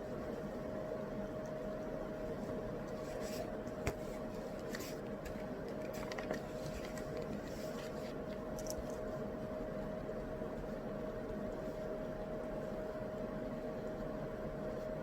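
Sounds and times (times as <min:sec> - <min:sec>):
faint scratches and clicks: 0:02.8 - 0:09.0.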